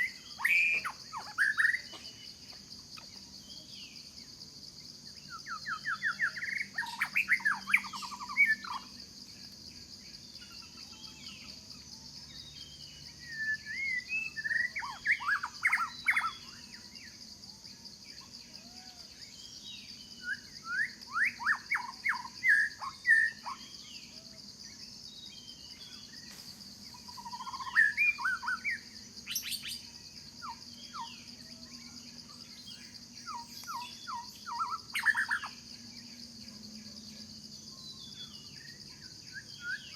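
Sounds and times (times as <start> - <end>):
high insect drone: 0.0 - 39.9
bird singing rapid notes: 26.9 - 35.8.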